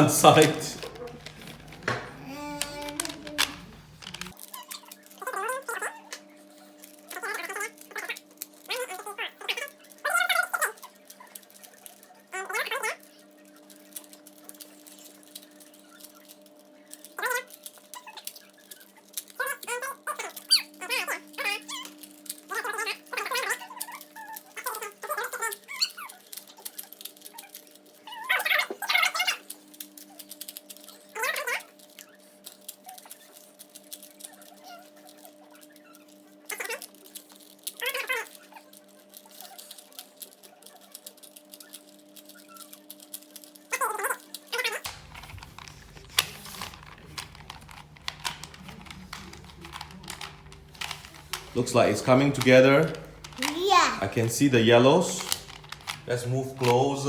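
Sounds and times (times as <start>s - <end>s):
plastic cube layers clicking: 0.0s - 5.6s, 35.1s - 57.0s
plastic puzzle cube clicks: 44.6s - 53.6s, 55.2s - 56.8s
steady low hum: 44.9s - 57.0s.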